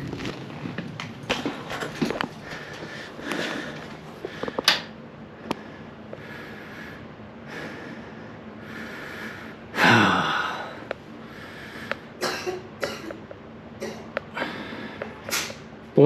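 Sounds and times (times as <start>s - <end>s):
person breathing: 2.3s - 12.2s, 14.3s - 15.3s.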